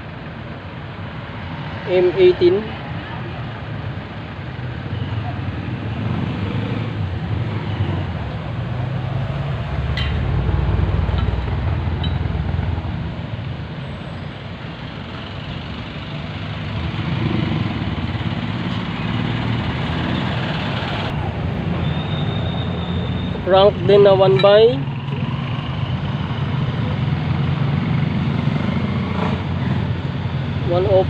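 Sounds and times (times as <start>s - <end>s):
rumble of passing vehicles: 0.0s - 31.0s.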